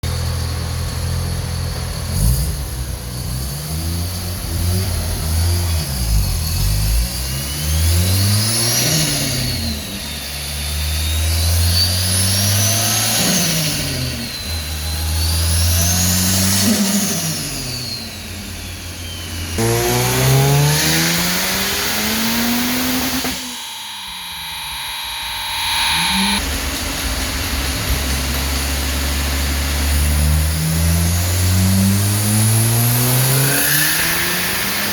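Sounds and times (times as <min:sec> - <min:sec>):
rotary engine revving: 0:02.1 - 0:34.9
turbo whistle: 0:06.1 - 0:26.5.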